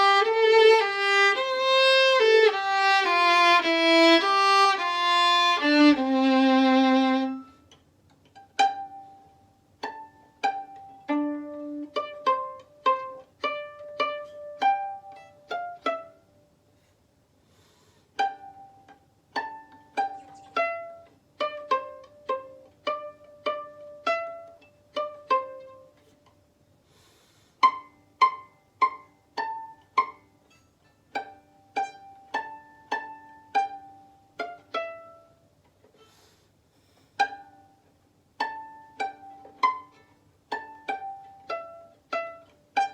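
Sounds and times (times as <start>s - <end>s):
bowed violin phrase: 0.0s - 7.6s, 9.8s - 16.2s
pizzicato violin melody: 0.0s - 16.6s, 18.1s - 27.0s, 27.6s - 42.9s.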